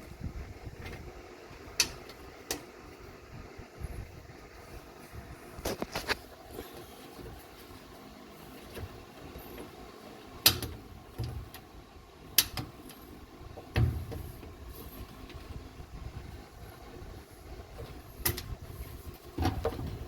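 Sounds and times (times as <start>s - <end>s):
low steady hum: 0.0s - 20.0s
dryer parts knocking and clanking: 8.6s - 11.7s, 12.3s - 15.7s, 16.4s - 20.0s.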